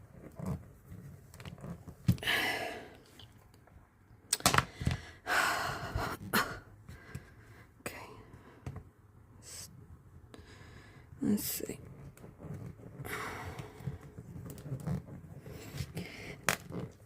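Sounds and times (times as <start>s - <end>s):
effortful breaths: 2.2s - 3.2s, 10.3s - 11.2s, 13.0s - 14.3s, 15.4s - 16.5s.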